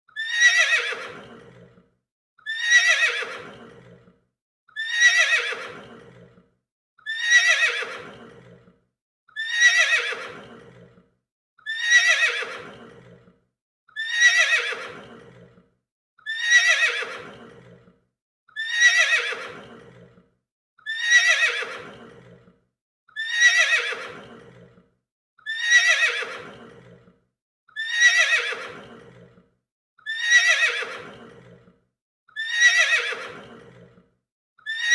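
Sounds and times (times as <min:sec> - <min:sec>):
horse neighing: 0:00.2 - 0:01.7, 0:02.5 - 0:04.1, 0:04.8 - 0:06.4, 0:07.1 - 0:08.7, 0:09.4 - 0:10.9, 0:11.7 - 0:13.2, 0:14.0 - 0:15.5, 0:16.3 - 0:17.8, 0:18.6 - 0:20.1, 0:20.9 - 0:22.4, 0:23.2 - 0:24.7, 0:25.5 - 0:27.0, 0:27.8 - 0:29.3, 0:30.1 - 0:31.6, 0:32.4 - 0:33.9.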